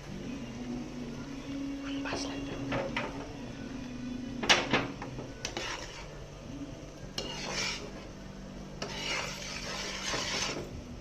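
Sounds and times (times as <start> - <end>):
spoon scraping a pan: 5.2 - 6.3, 7.1 - 10.8.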